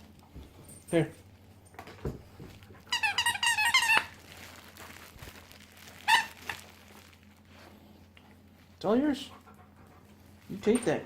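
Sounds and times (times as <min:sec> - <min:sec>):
squeaky dog toy squeaking: 0:02.9 - 0:04.2, 0:06.0 - 0:06.6.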